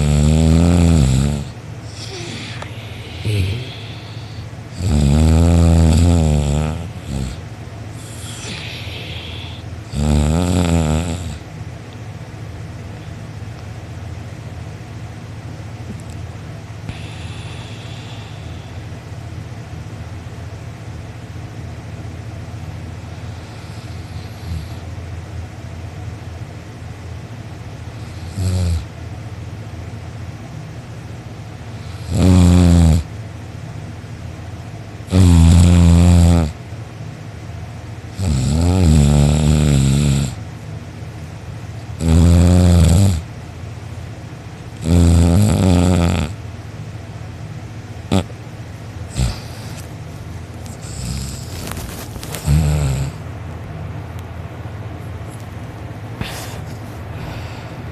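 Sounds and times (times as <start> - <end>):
person snoring loudly: 0.0 - 7.4, 8.0 - 11.4, 16.9 - 18.8, 28.1 - 28.9, 31.9 - 33.1, 35.1 - 36.6, 38.2 - 40.4, 42.0 - 43.3, 44.8 - 46.4, 48.1 - 48.3, 49.1 - 49.8, 50.7 - 51.6, 52.4 - 53.2.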